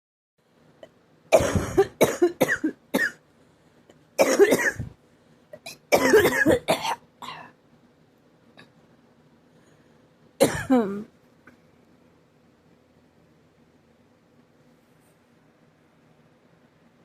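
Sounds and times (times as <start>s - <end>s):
person coughing: 1.3s - 3.2s, 4.2s - 5.0s, 5.6s - 7.5s, 10.4s - 11.0s.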